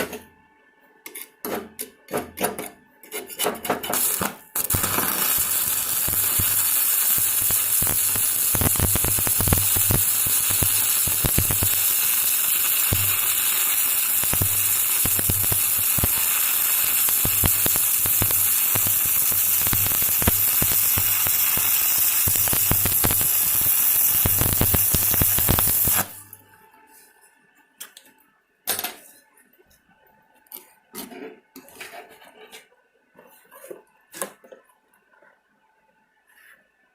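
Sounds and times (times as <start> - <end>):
welding arc crackling hiss: 3.9 - 26.4.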